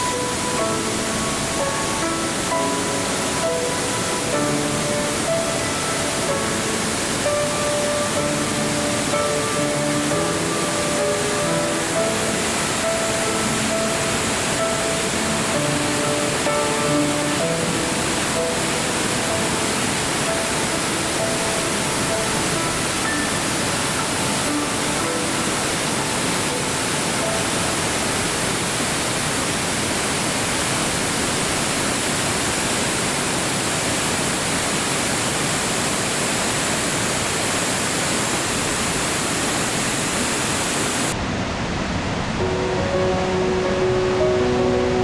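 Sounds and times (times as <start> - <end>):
waterfall rushing: 0.0 - 45.0.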